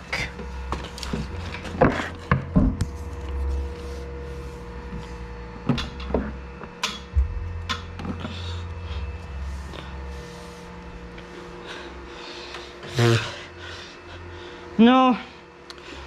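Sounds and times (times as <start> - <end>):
faint steady hum: 0.0 - 16.0
rumbling handling noise: 0.3 - 13.0.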